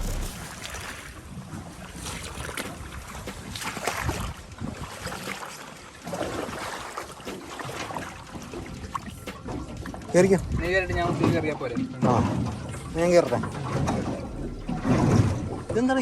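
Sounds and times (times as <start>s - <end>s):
wind on microphone: 1.6s - 5.3s.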